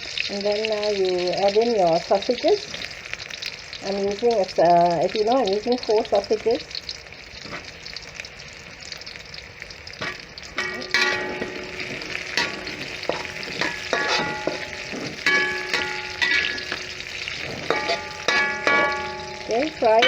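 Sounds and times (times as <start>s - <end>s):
sausages sizzling in hot oil: 0.0s - 20.0s
utensil scraping a metal pan: 10.0s - 20.0s.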